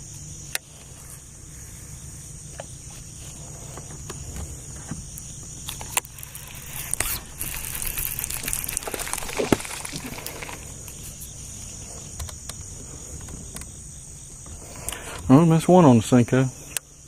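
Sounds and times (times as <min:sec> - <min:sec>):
high-pitched insect chorus: 0:00.0 - 0:17.0
sharp clicks: 0:05.2 - 0:11.0.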